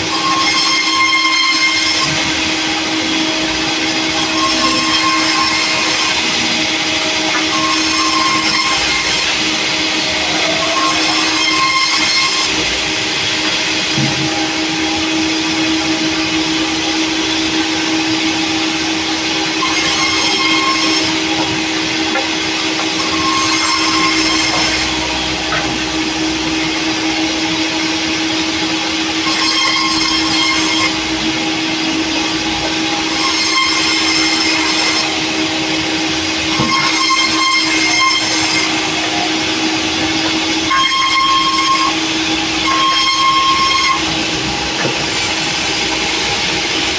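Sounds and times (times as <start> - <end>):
sawmill saw cutting log: 0.0 - 46.9
high ringing tones: 23.0 - 28.3, 36.6 - 46.5.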